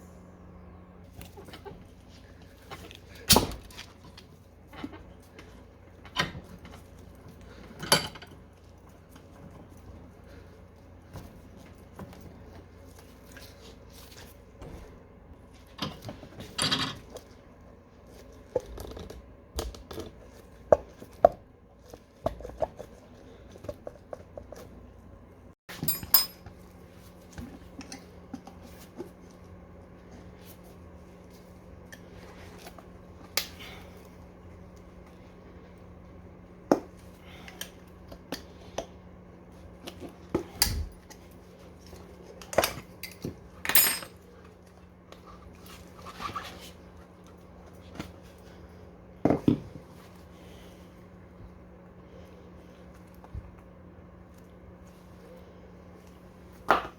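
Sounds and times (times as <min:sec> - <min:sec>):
faint steady hum: 0:00.0 - 0:56.9
metal tools clinking and knocking: 0:25.7 - 0:26.5, 0:43.0 - 0:44.2.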